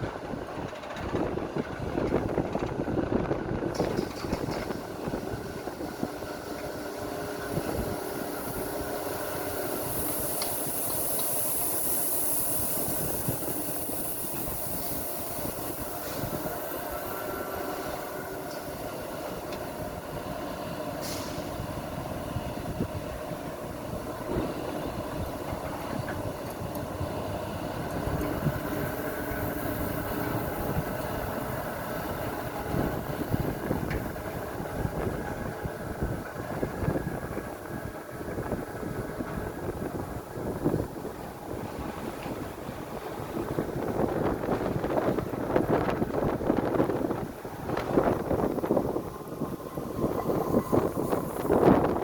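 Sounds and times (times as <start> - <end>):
heavy machinery running: 0.0 - 52.0
high hiss: 4.6 - 22.4, 23.6 - 35.0.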